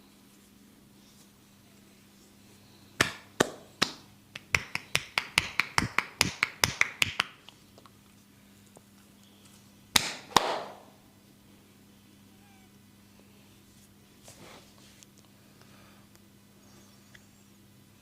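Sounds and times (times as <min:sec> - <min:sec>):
hands smacking a head: 0:03.0 - 0:07.4, 0:09.9 - 0:10.8.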